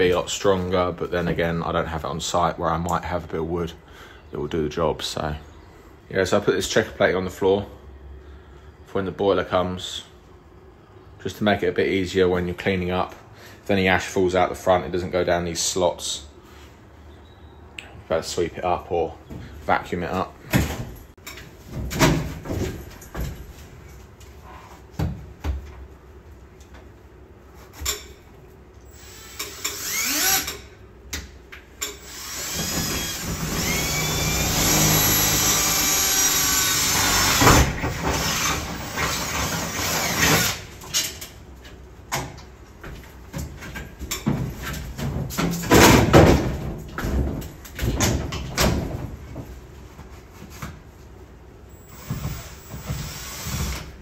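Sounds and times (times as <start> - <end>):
small electric motor running: 28.9 - 30.5.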